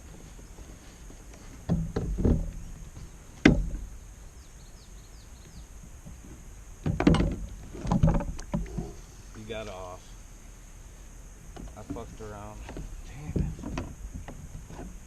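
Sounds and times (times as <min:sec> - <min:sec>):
low thumps against kayak hull: 0:01.6 - 0:02.8, 0:03.4 - 0:04.0, 0:06.8 - 0:09.0.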